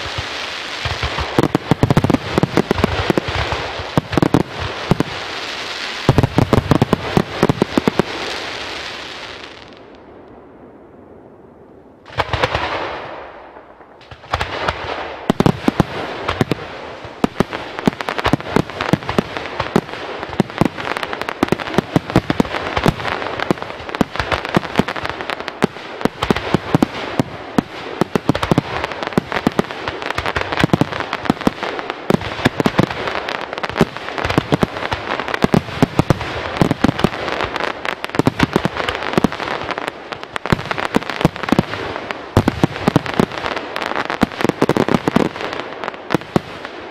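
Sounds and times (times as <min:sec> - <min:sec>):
fireworks bangs: 0:00.0 - 0:09.9, 0:12.1 - 0:46.9
fireworks crackling: 0:00.0 - 0:10.0, 0:12.1 - 0:46.9.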